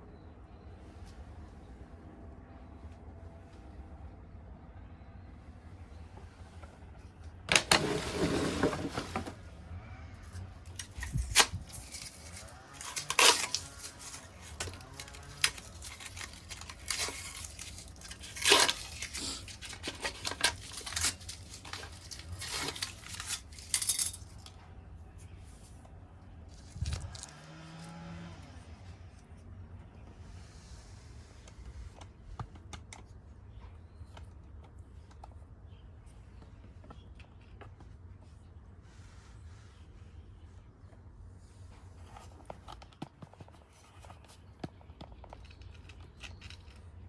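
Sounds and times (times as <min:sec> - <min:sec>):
objects rustling: 0:07.4 - 0:09.5, 0:10.2 - 0:25.8, 0:26.4 - 0:28.0.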